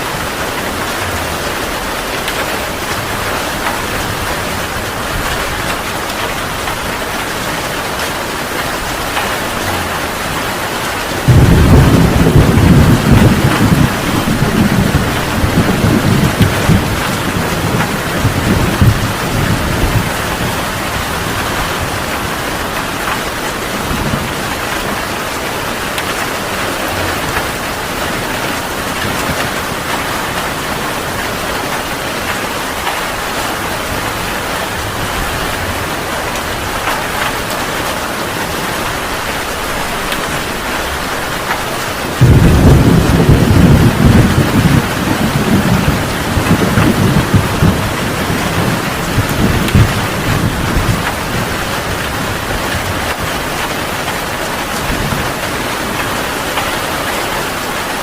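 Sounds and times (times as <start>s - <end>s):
heavy rain: 0.0s - 58.0s
thunder rumbling: 0.0s - 58.0s.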